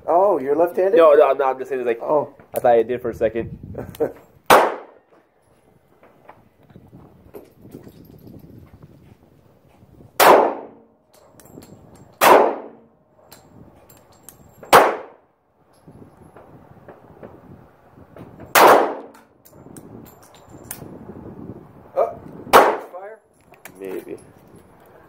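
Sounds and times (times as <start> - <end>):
pistol shots: 4.5 - 5.0, 10.2 - 10.8, 12.2 - 12.9, 14.7 - 15.2, 18.5 - 19.2, 22.5 - 23.0.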